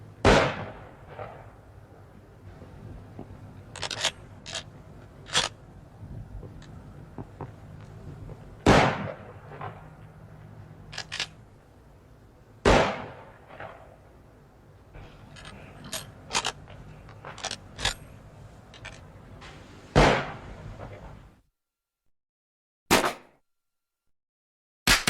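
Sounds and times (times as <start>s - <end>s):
pistol shots: 0.2s - 1.6s, 8.6s - 10.0s, 12.6s - 13.9s, 20.0s - 20.4s
metallic clicks and clinks: 3.7s - 4.7s, 15.2s - 19.0s.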